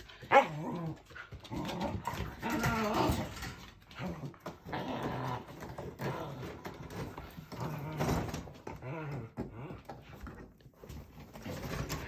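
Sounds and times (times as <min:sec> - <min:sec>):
puppy barking: 0:00.3 - 0:00.6.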